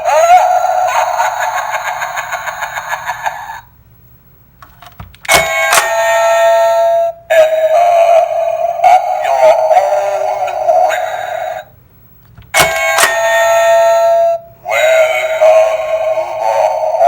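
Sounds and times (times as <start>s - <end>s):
warbling spooky recorded voice: 0.0s - 3.7s, 5.9s - 11.8s, 13.3s - 17.0s
electronic doorbell chime: 5.3s - 6.7s, 12.6s - 14.2s.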